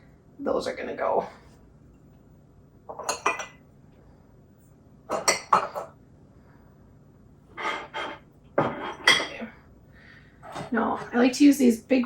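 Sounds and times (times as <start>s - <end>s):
cups clinking: 2.9s - 3.6s, 5.1s - 6.0s, 7.6s - 9.5s.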